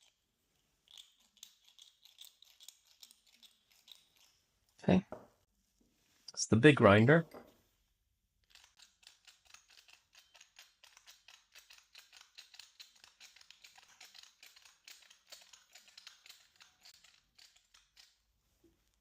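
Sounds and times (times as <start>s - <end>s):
spice grinder cracking peppercorns: 8.5s - 18.2s.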